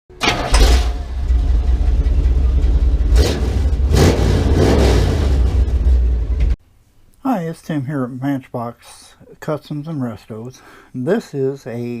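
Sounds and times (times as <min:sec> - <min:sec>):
engine rumbling and revving: 0:00.2 - 0:06.6.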